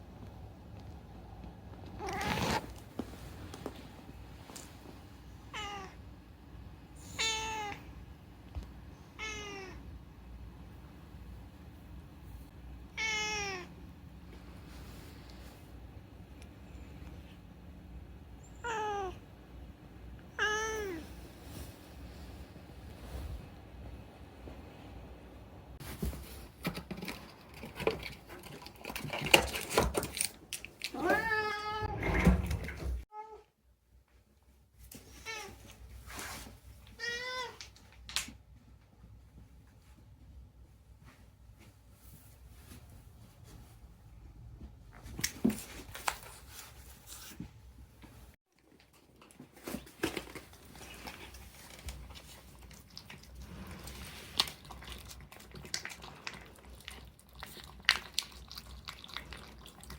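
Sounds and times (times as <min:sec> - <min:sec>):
cat meowing: 0:07.1 - 0:07.8, 0:09.2 - 0:09.8, 0:12.9 - 0:13.7, 0:31.0 - 0:32.1
rustling: 0:25.8 - 0:33.0.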